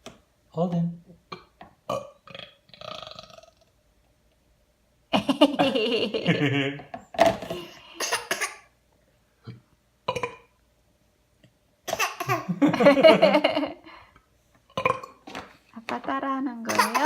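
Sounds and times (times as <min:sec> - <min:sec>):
laughter: 0:05.1 - 0:06.9, 0:12.5 - 0:13.8
man and baby fake coughing: 0:08.0 - 0:08.7, 0:16.7 - 0:17.0.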